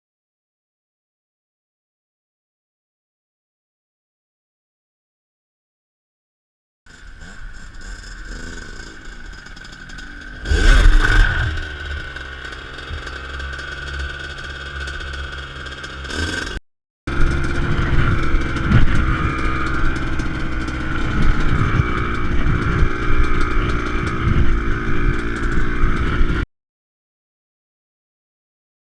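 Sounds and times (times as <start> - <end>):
dirt bike engine revving: 6.9 - 26.4.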